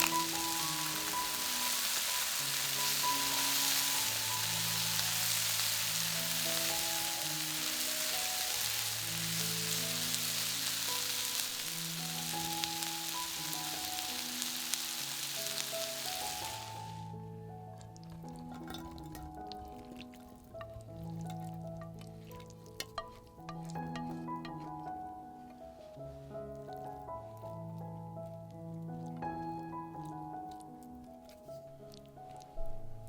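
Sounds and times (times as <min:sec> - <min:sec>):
food sizzling in hot oil: 0:00.0 - 0:17.2, 0:18.3 - 0:24.6
soft background music: 0:00.0 - 0:33.0.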